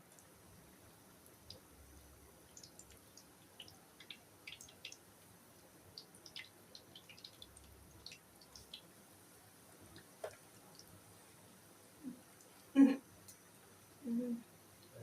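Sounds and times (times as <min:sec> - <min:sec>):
small crackles and pops: 0:00.0 - 0:09.0, 0:09.8 - 0:11.0, 0:12.2 - 0:13.7
quiet hiss: 0:00.0 - 0:15.0.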